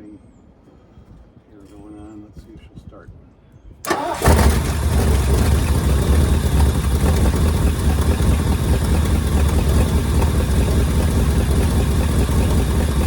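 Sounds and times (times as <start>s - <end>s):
car engine idling: 3.9s - 13.0s.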